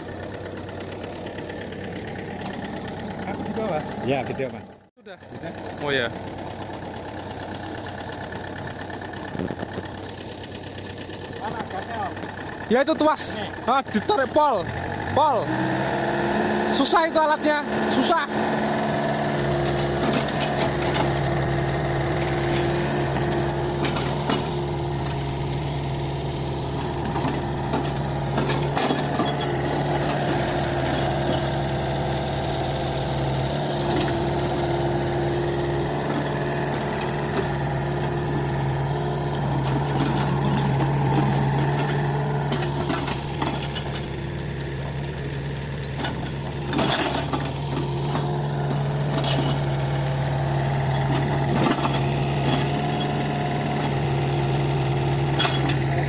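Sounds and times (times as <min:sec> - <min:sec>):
excavator diesel engine running: 0:00.0 - 0:56.0
metallic clinks and knocks: 0:19.6 - 0:34.4, 0:35.9 - 0:56.0.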